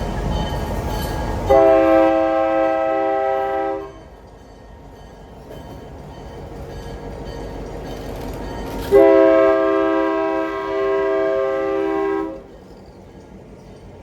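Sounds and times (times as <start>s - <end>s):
train rumble: 0.0s - 14.0s
locomotive horn blast: 1.5s - 4.0s, 8.9s - 12.5s.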